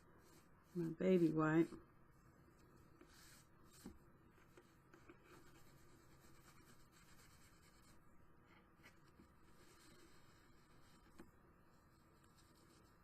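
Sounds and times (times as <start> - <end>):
wipe rubbing on paper: 2.4 - 8.0.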